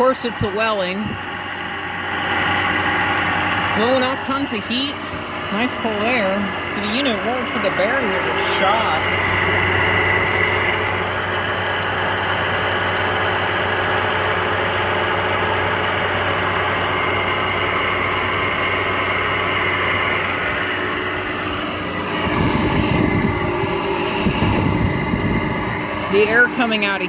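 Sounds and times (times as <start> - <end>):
rough low rumble: 2.1 - 27.0
air conditioner hum with tones: 3.0 - 11.1.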